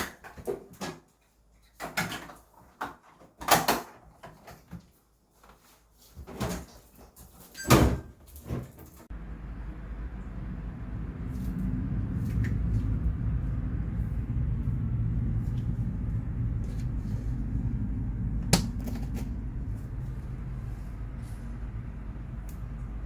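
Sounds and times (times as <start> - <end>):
low steady rumble: 9.1 - 23.0.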